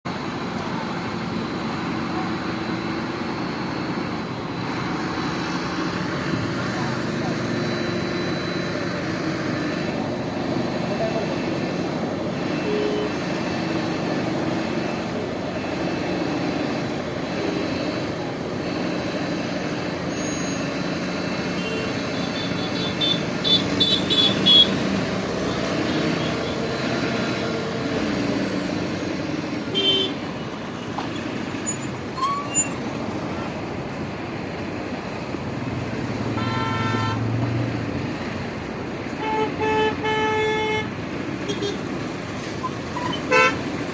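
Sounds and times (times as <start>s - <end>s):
vehicle engines running: 0.0s - 43.9s
car horns honking: 12.3s - 13.2s, 21.5s - 24.8s, 29.7s - 31.8s, 36.2s - 37.4s, 39.1s - 41.9s, 43.0s - 43.7s.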